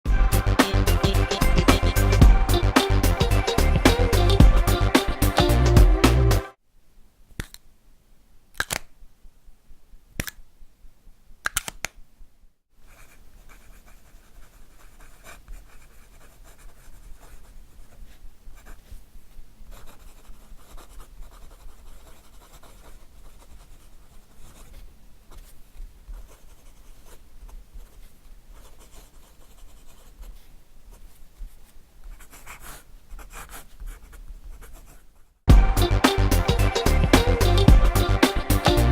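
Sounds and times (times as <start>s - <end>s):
pen cap clicks: 7.4s - 7.6s, 8.6s - 8.9s, 11.4s - 12.0s
pen nib scratching on paper: 12.8s - 35.3s.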